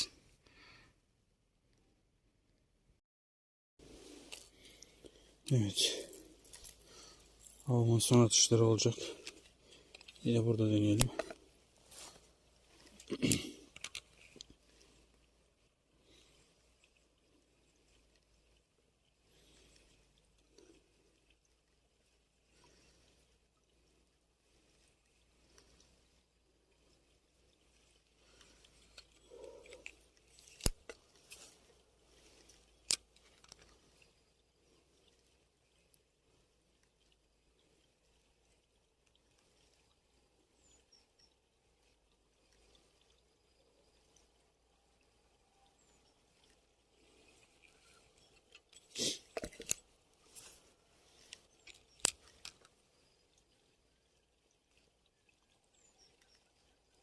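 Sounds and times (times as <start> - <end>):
soft handling rustling: 3.8 - 15.8.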